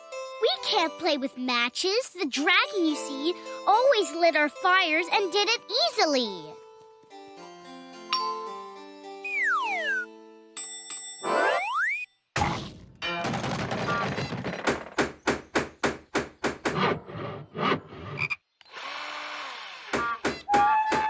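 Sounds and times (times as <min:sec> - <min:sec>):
cartoon rising whistle: 0:09.2 - 0:10.1, 0:20.5 - 0:21.0.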